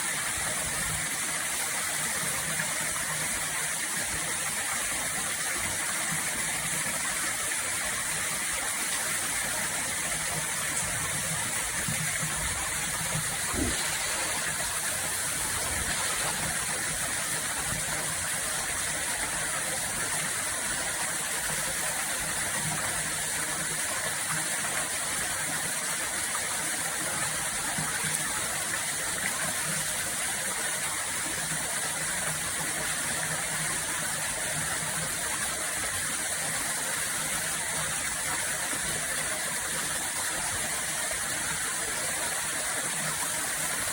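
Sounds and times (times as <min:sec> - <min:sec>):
flowing water rushing: 0:00.0 - 0:43.9.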